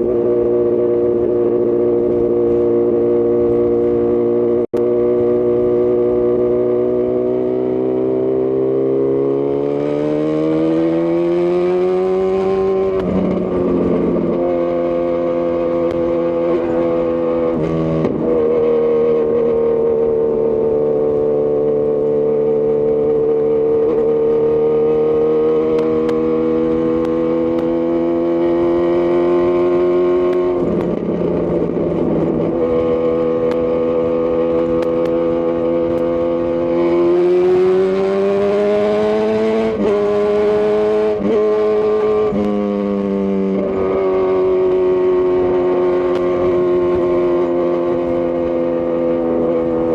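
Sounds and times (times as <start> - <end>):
motorcycle engine accelerating: 0.0 - 49.9.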